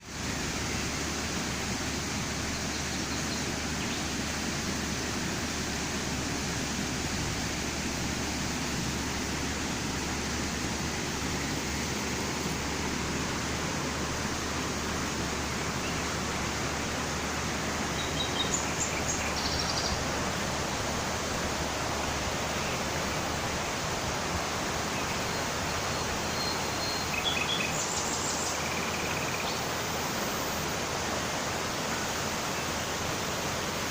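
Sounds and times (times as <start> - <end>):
river water rushing: 0.0 - 33.9
bird chirps: 17.9 - 20.0, 25.0 - 29.6.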